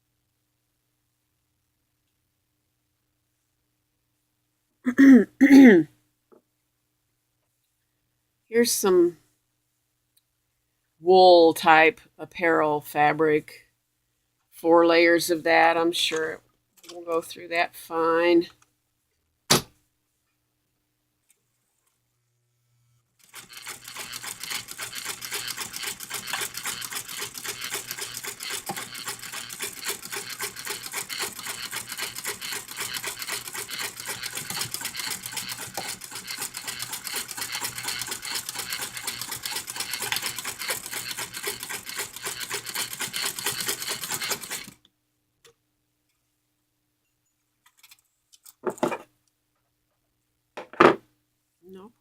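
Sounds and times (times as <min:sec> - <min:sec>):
sewing machine stitching fast: 0:23.2 - 0:44.8.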